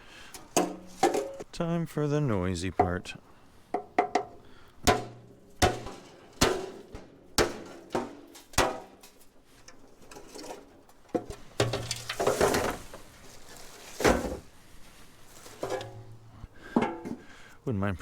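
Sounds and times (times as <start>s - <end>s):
hammer striking scrap metal: 0.3s - 1.5s, 3.7s - 13.0s, 15.6s - 17.2s.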